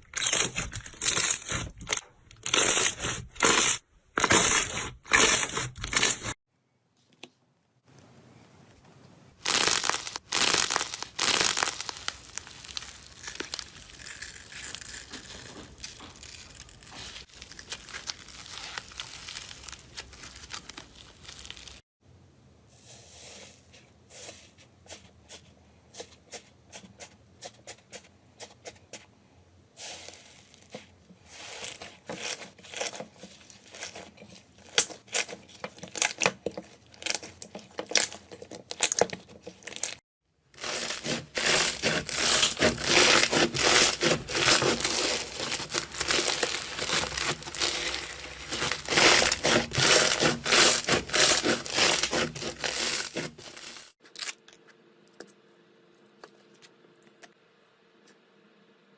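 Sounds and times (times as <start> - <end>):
slime crackling: 9.4 - 21.8, 40.6 - 53.9.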